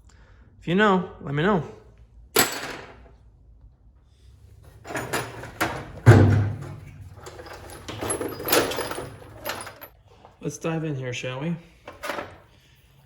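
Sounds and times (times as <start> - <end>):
hand tools clattering on surface: 4.7 - 9.9, 11.9 - 12.4
heavy thump: 4.9 - 6.8.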